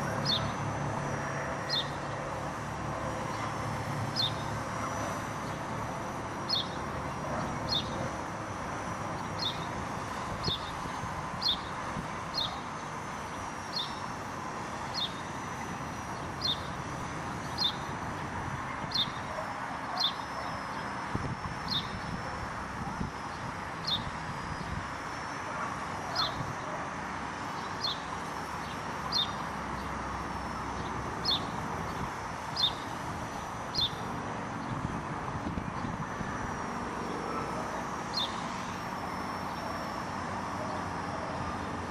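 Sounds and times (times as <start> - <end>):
electric motor whine: 0.0 - 41.9
bird chirping: 4.2 - 4.5, 6.5 - 6.8, 9.2 - 9.7, 12.3 - 12.6, 16.4 - 16.8, 17.4 - 17.9, 18.8 - 19.2, 21.7 - 21.9, 23.8 - 24.1, 27.6 - 30.0, 30.8 - 34.0, 38.1 - 38.4
wind noise: 21.0 - 25.0, 31.4 - 36.7.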